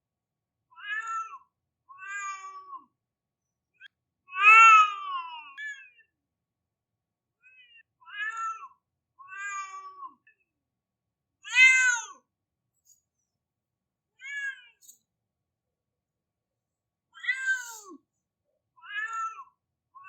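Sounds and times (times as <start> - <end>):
cat meowing: 11.5 - 12.1, 17.2 - 18.0.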